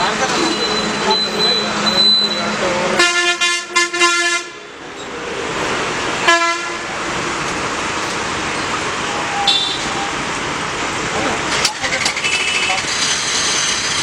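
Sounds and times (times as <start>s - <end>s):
road traffic noise: 0.0s - 14.0s
vehicle horn honking: 3.0s - 4.7s, 6.2s - 6.9s, 9.3s - 10.1s, 12.0s - 12.9s.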